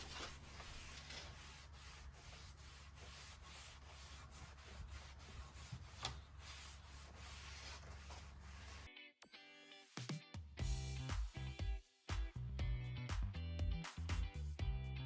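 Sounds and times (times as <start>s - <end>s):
rubbing strokes on wood: 0.0s - 8.9s
music: 9.0s - 15.0s.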